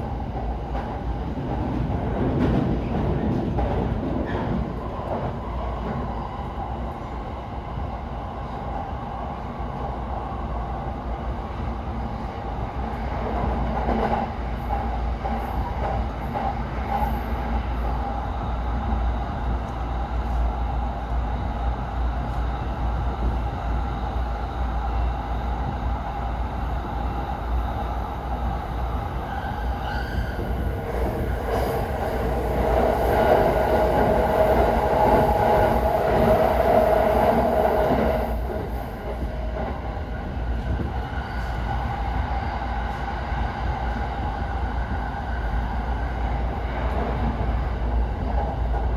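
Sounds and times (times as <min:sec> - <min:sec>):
train running rumble: 0:00.0 - 0:09.0, 0:09.7 - 0:48.9.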